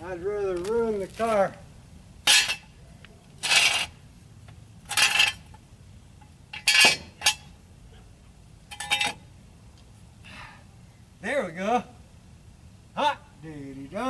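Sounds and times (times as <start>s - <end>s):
metallic clanks and scrapes: 2.2s - 2.7s, 3.4s - 4.0s, 4.8s - 5.6s, 6.2s - 7.5s, 8.7s - 9.2s.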